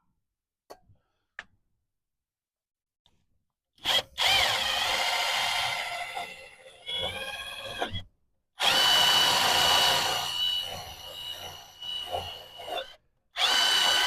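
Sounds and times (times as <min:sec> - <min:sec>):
power tool motor whirring: 0:08.6 - 0:14.0.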